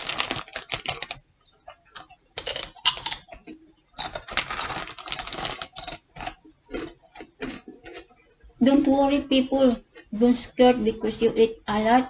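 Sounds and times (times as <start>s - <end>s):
crunching chips while chewing: 0.0s - 1.2s, 1.8s - 8.2s.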